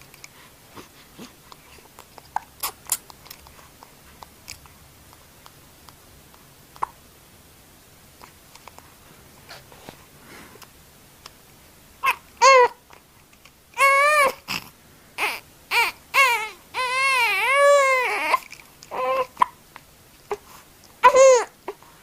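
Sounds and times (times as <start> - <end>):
baby crying: 12.0 - 12.8, 13.8 - 14.6, 15.2 - 19.4, 21.0 - 21.5.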